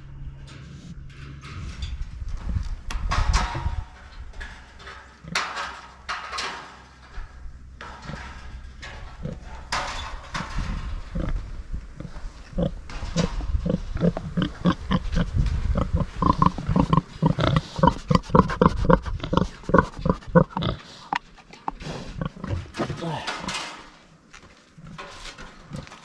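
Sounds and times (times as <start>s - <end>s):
pigs grunting: 10.5s - 23.7s.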